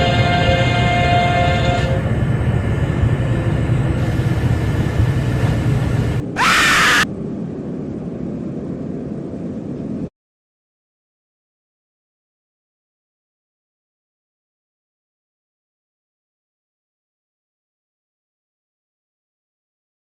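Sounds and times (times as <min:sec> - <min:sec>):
rising scream-like shriek: 0:06.3 - 0:07.1
low rumble: 0:07.0 - 0:10.1.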